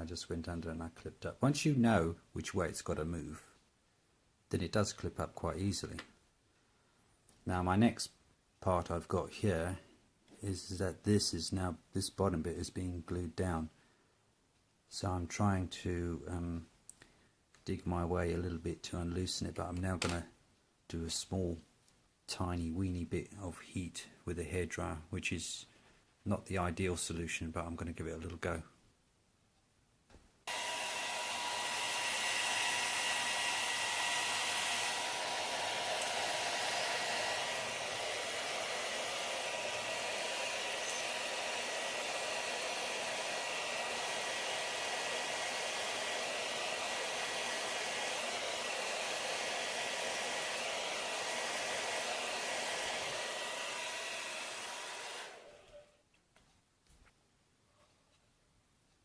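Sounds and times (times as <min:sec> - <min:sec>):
hair dryer blowing: 0:30.5 - 0:56.0.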